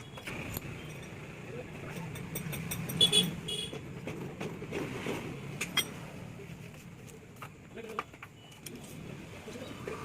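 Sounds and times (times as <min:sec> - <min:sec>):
metal tools clinking: 0:00.0 - 0:03.0.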